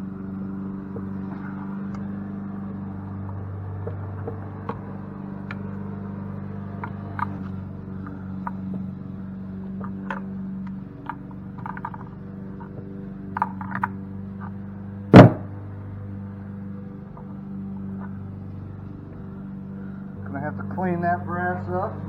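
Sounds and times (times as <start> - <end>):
steady low hum: 0.0 - 22.0
sharp loud knock: 15.2 - 15.5.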